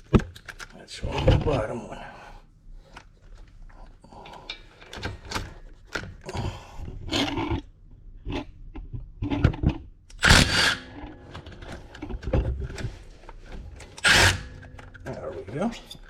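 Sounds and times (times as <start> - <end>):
metal scraping: 13.9 - 16.0.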